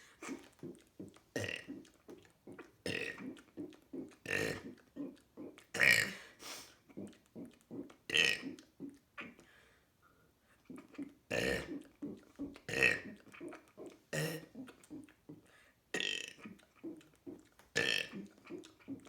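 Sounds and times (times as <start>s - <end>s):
person burping loudly: 14.1s - 14.6s.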